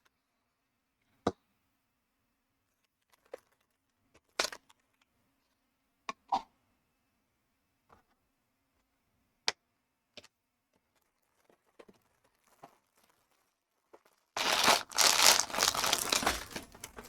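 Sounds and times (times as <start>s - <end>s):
packaging crinkling and tearing: 14.1s - 17.0s.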